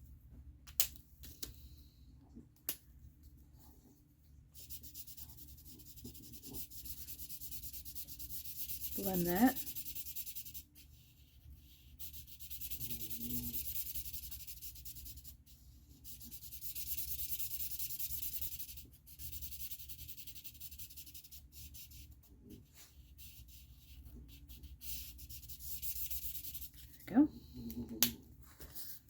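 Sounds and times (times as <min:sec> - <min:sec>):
marker scratching on cardstock: 0:04.6 - 0:27.0.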